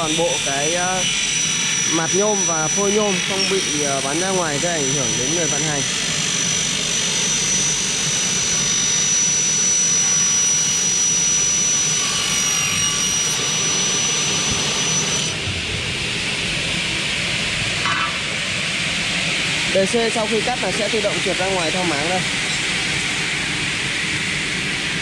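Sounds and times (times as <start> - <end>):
saw blades rushing: 0.0 - 6.8
high saw whine: 0.0 - 25.0.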